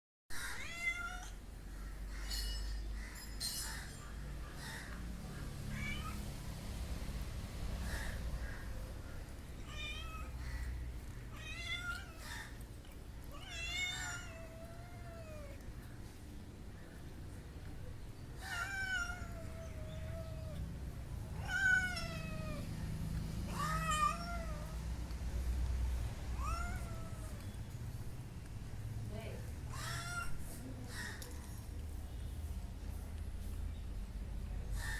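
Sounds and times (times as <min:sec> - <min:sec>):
cat meowing: 0:00.4 - 0:01.4, 0:05.7 - 0:06.3, 0:09.6 - 0:10.7, 0:11.3 - 0:12.6, 0:13.3 - 0:15.6, 0:18.4 - 0:20.6, 0:21.4 - 0:22.7, 0:23.5 - 0:24.8, 0:26.4 - 0:27.4, 0:29.7 - 0:30.4
cat chirping: 0:13.3 - 0:15.6, 0:23.5 - 0:24.8, 0:29.7 - 0:30.4.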